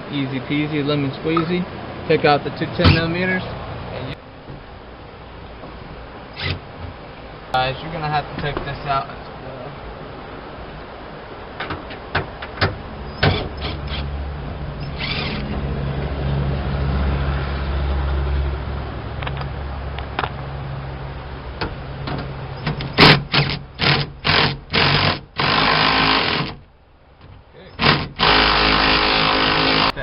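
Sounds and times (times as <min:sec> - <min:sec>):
loud noisy bursts: 0:23.0 - 0:26.6, 0:27.7 - 0:30.0.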